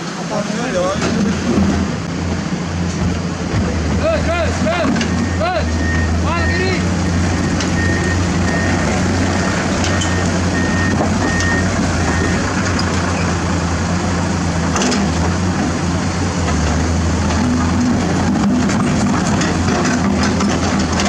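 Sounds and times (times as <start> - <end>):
diesel earthmoving machinery running: 0.0 - 21.0
reversing alarm beeps: 5.1 - 6.8, 7.7 - 12.4.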